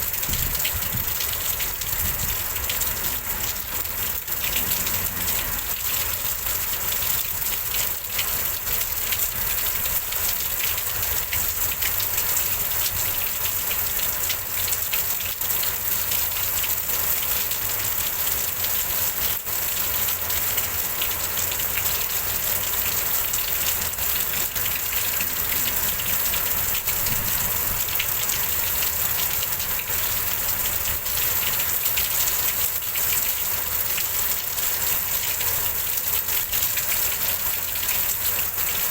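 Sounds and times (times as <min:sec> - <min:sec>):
heavy rain pattering: 0:00.0 - 0:38.9.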